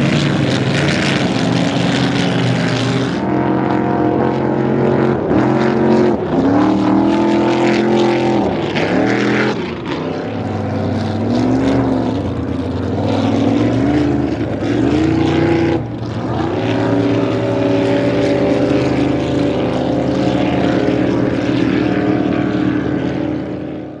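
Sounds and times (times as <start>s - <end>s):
boat engine revving: 0.0s - 24.0s.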